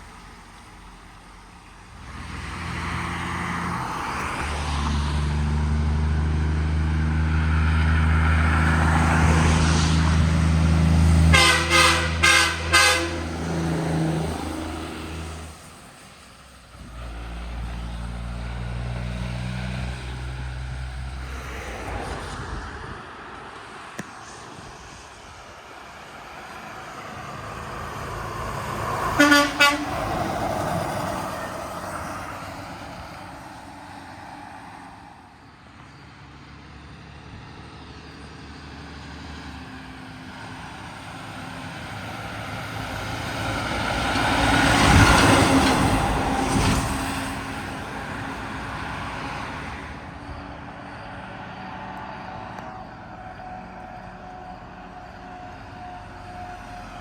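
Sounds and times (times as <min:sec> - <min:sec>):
truck passing by: 0:00.0 - 0:57.0
horn toots: 0:11.1 - 0:15.5, 0:29.1 - 0:30.4.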